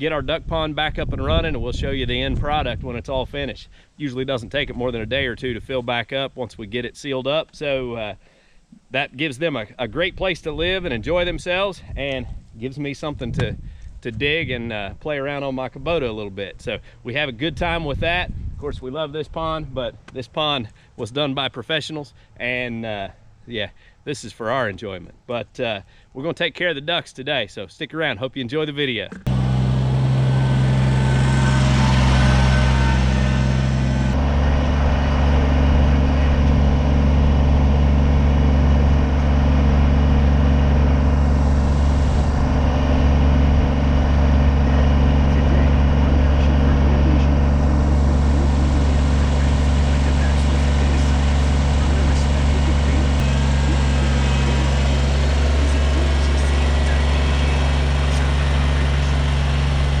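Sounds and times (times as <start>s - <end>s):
tractor diesel engine running: 29.1s - 60.0s.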